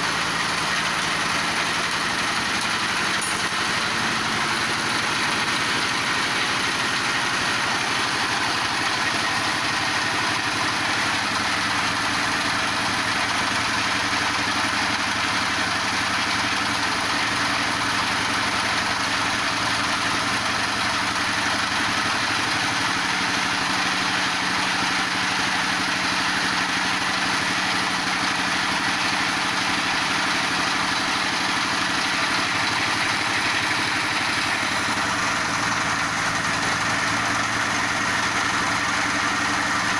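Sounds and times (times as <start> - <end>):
pellet machine mechanical drone: 0.0 - 39.9.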